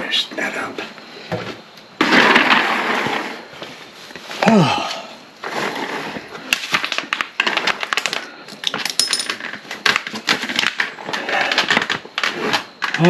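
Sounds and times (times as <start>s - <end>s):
small parts and tools clattering: 6.5s - 13.0s.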